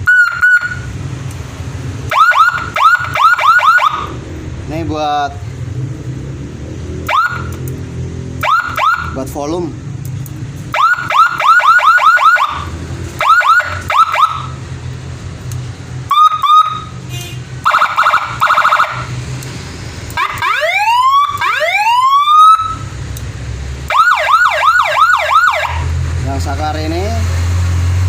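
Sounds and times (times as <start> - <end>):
electronic siren: 0.0 - 1.0, 2.1 - 4.2, 7.0 - 7.6, 8.4 - 9.2, 10.7 - 14.6, 16.1 - 17.0, 17.6 - 19.1, 20.1 - 23.0, 23.9 - 25.9.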